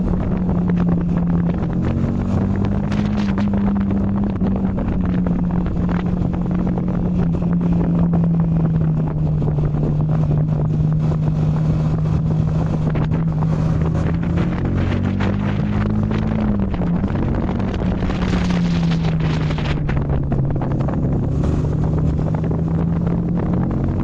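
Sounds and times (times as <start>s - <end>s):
motorcycle engine cruising: 0.0s - 24.0s
wind rushing over microphone: 0.0s - 24.0s.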